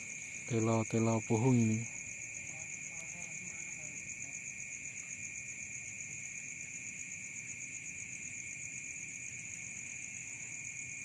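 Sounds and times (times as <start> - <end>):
crickets trilling: 0.0 - 11.0.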